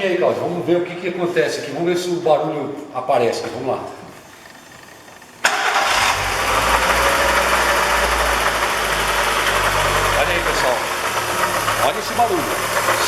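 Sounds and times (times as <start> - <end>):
car engine starting and idling: 3.2 - 13.0
rough belt drive noise: 4.0 - 13.0.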